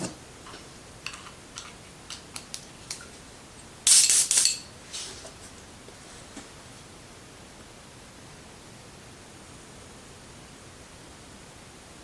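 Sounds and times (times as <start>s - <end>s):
airbrush spraying hiss: 3.9s - 4.6s.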